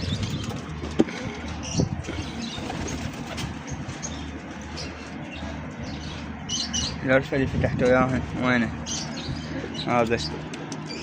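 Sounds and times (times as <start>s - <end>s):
pigeons cooing: 0.0s - 7.0s, 8.8s - 11.0s
small birds chirping: 0.0s - 11.0s.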